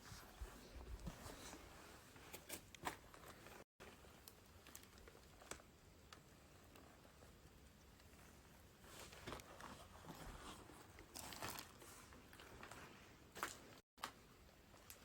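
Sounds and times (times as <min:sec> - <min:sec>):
faint clicks and crunches: 0:02.3 - 0:07.4.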